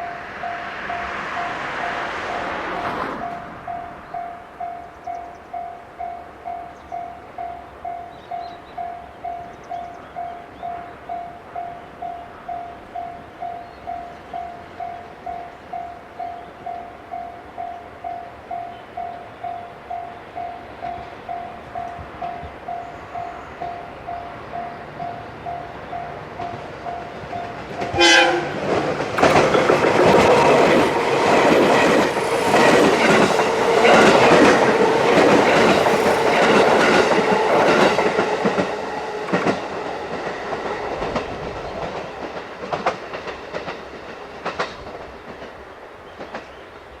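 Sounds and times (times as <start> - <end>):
level-crossing bell ringing: 0.0 - 28.2
train wheels clacking over rail joints: 23.2 - 46.6
train horn blast: 27.7 - 40.1.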